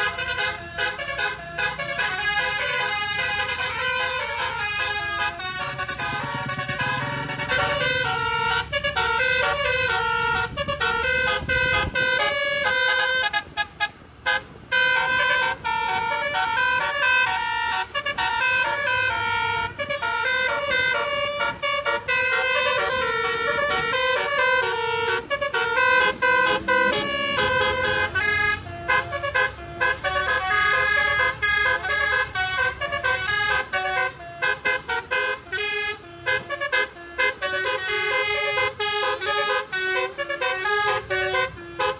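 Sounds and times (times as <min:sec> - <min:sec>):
musical air horn tune: 0:00.0 - 0:41.9.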